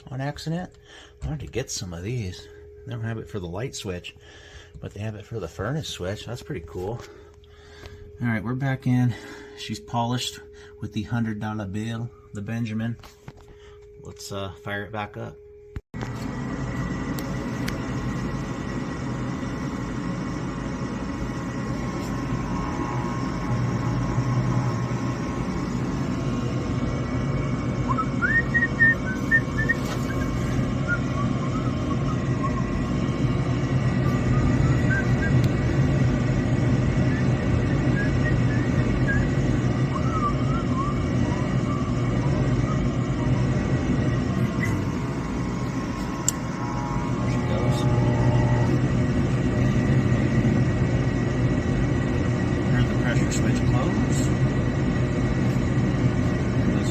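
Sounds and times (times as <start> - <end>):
furnace motor humming: 0.0 - 56.9
faint warbling whistles: 21.3 - 33.3, 34.0 - 35.6, 37.0 - 48.6.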